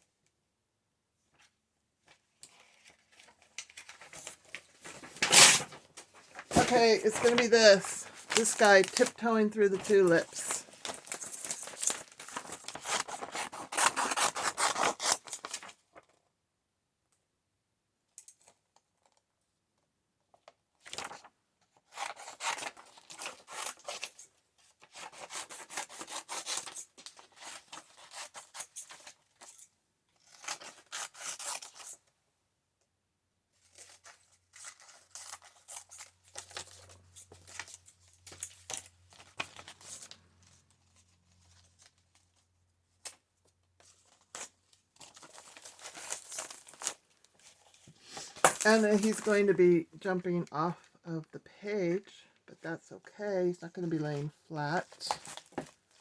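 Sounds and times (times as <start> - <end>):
paper tearing: 3.8 - 5.8, 6.4 - 15.7, 21.9 - 24.2, 24.8 - 32.0.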